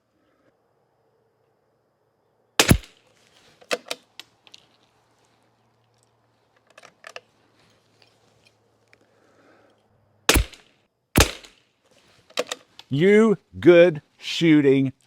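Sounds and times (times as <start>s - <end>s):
rifle shot: 2.6s - 3.0s, 10.3s - 11.6s
rifle bolt clicks: 3.6s - 4.3s.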